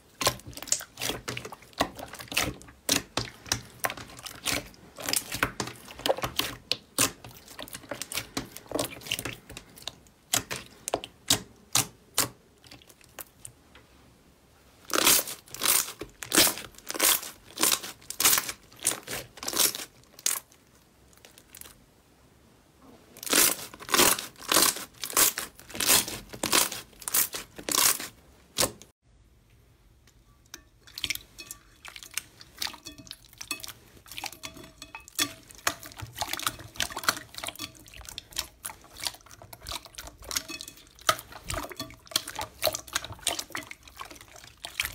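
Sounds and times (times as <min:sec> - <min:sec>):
slime squeezed crackling: 0:14.8 - 0:20.6, 0:23.2 - 0:28.9.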